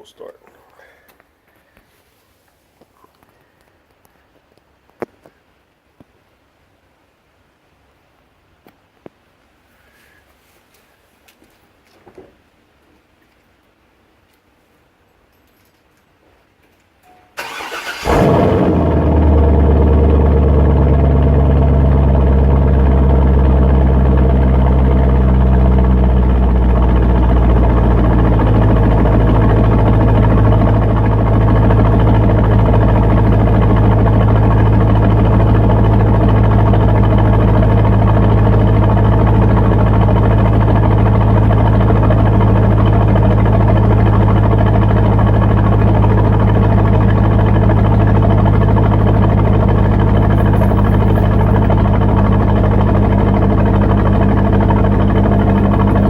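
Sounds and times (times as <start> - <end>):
car engine idling: 17.4 - 56.0.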